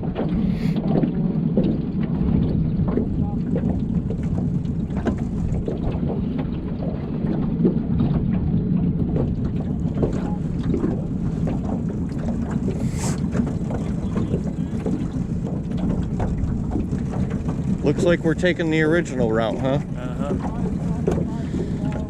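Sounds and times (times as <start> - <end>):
boat motor rumbling: 0.0 - 22.0
wind buffeting microphone: 0.0 - 22.0.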